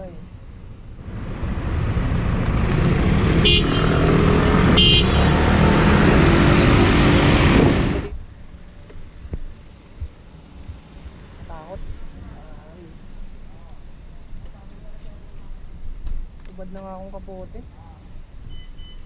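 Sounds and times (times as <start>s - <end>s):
wind and road noise: 0.3s - 14.2s
vehicle horn beeps: 3.3s - 6.2s, 18.5s - 19.0s.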